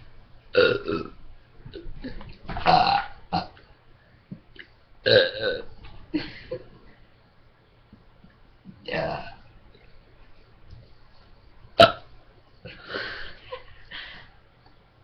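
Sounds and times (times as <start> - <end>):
loud human belches: 0.6 - 1.8, 2.5 - 3.6, 5.1 - 5.7, 8.9 - 9.4, 11.8 - 12.0.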